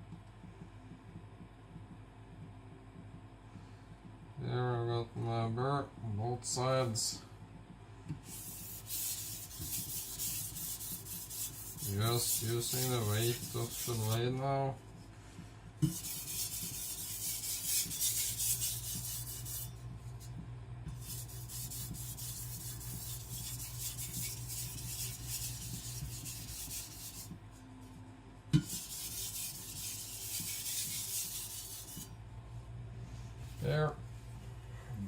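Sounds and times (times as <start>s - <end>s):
cleaver scraping on whetstone: 8.3s - 14.2s, 15.8s - 19.7s, 28.6s - 32.1s.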